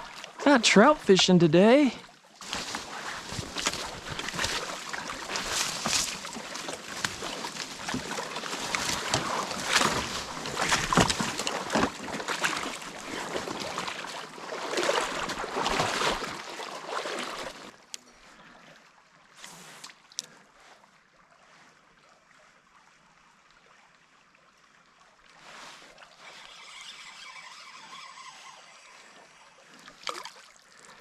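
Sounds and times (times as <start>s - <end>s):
kayak scraping: 0.0s - 17.8s, 25.4s - 30.2s
kayak paddle splashing: 0.0s - 17.9s, 25.4s - 31.0s.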